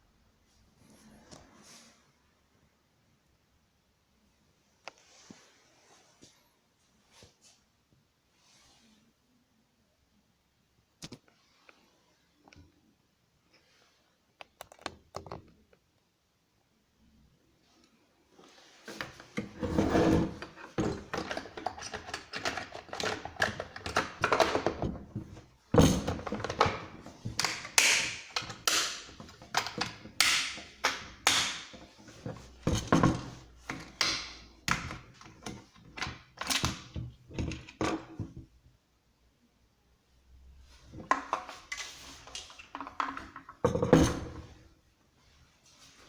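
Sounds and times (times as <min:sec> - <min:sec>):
objects knocking on hard surface: 0:42.7 - 0:44.4.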